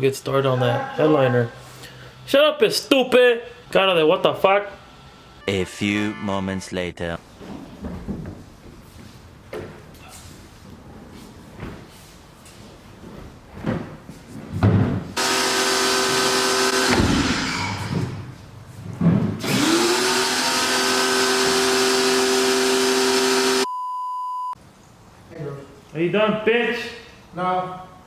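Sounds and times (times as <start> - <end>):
vacuum cleaner motor whine: 15.2 - 18.2, 19.4 - 23.7
steady beep tone: 23.6 - 24.6.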